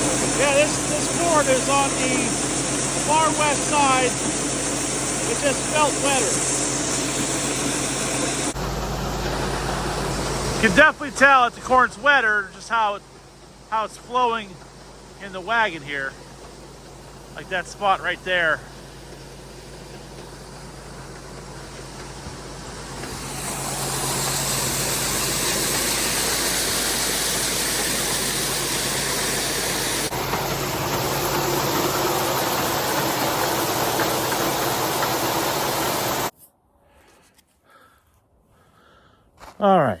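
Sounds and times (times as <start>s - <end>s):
rushing hiss of moving grain: 0.0s - 11.4s, 22.8s - 36.3s
grain auger humming: 0.0s - 36.3s.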